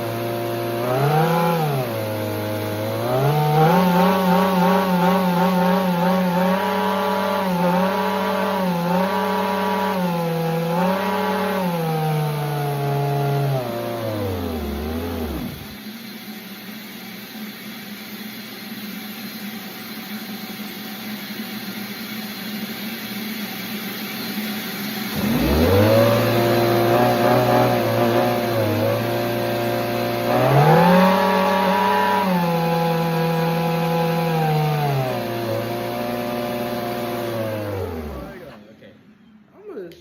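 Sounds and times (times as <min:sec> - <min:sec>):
engine running: 0:00.0 - 0:15.8, 0:24.9 - 0:38.7.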